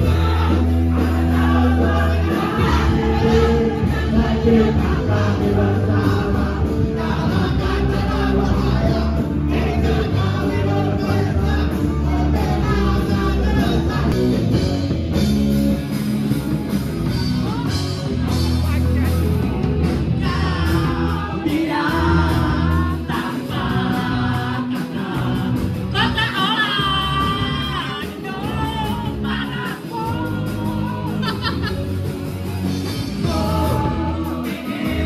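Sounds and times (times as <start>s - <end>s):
male singing: 0.0s - 14.2s, 20.2s - 31.5s, 33.2s - 35.0s
rock music: 0.0s - 35.0s.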